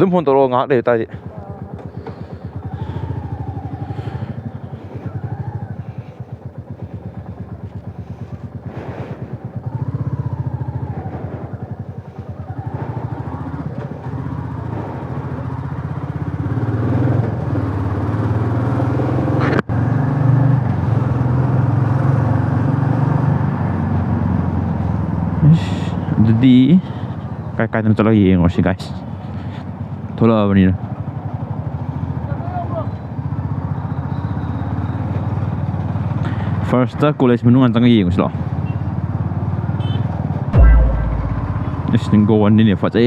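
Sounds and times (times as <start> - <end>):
motorcycle engine running: 1.0 - 18.2, 40.6 - 42.2.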